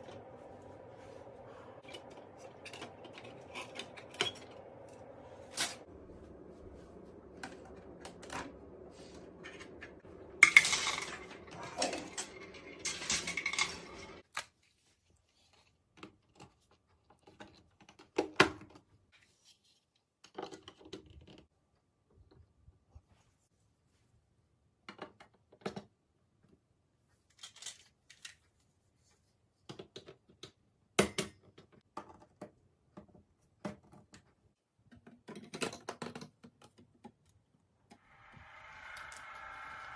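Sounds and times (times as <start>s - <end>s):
marbles clicking and clattering: 10.4s - 14.2s.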